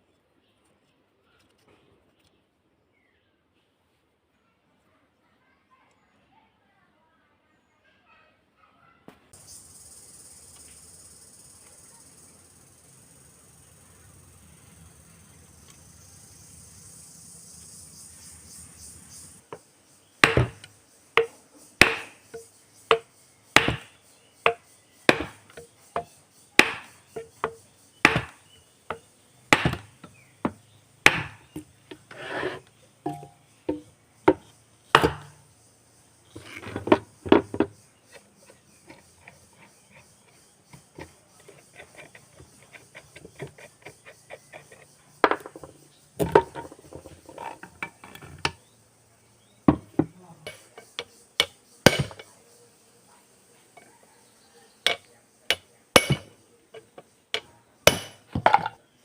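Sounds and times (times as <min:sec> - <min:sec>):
hammer striking metal: 0:54.9 - 0:56.3.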